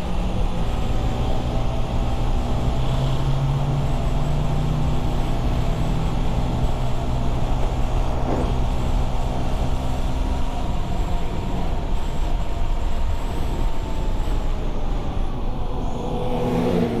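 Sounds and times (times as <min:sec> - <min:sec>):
heavy vehicle engine rumble: 0:00.0 - 0:17.0.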